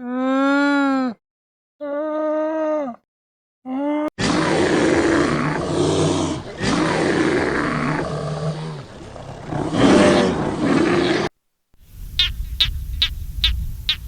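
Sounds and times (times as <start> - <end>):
big cat roaring and growling: 4.2 - 11.3.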